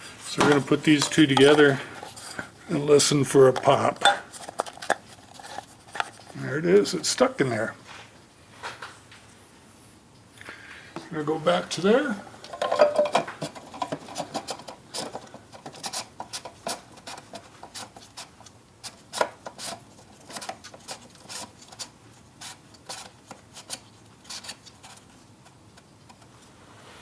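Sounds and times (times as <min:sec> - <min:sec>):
plastic parts clicking and rubbing: 0:00.4 - 0:02.5, 0:03.2 - 0:06.4, 0:12.5 - 0:26.4.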